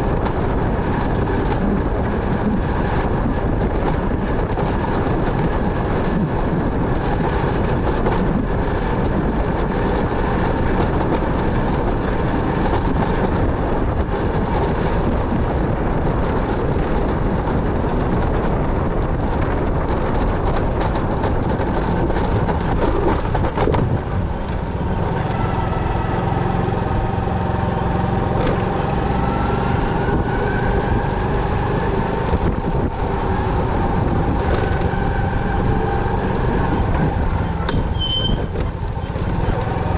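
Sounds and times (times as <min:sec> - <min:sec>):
motorcycle engine: 0:00.0 - 0:39.9
road and wind noise: 0:00.0 - 0:39.9
whining tones: 0:22.5 - 0:31.5.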